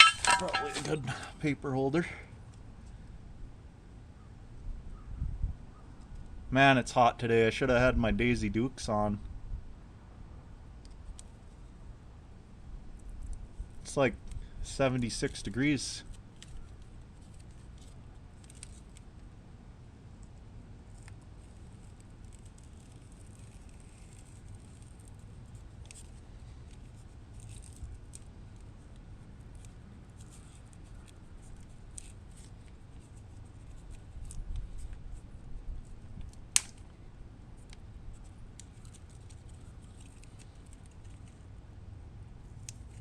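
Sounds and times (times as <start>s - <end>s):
small clicks and rustles: 16.0s - 19.3s, 20.2s - 37.0s, 37.6s - 41.5s, 42.4s - 43.0s.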